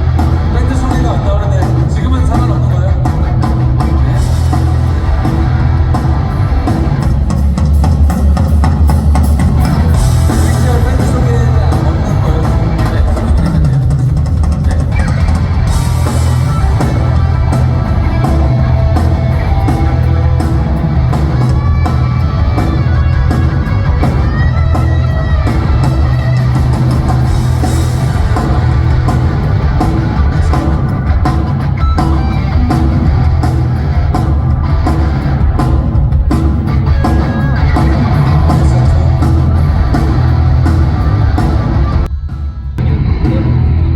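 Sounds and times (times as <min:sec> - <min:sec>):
live rock band playing: 0:00.0 - 0:43.9.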